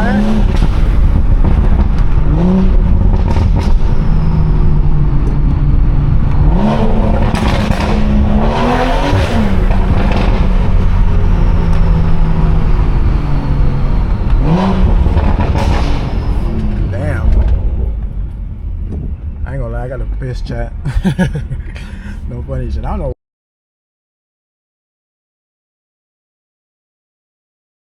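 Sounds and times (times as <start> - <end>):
car engine and exhaust revving: 0.0 - 23.0.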